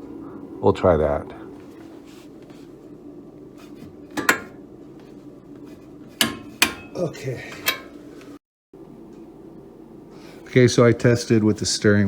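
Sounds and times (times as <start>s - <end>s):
metal tools knocking on metal: 6.2s - 7.9s.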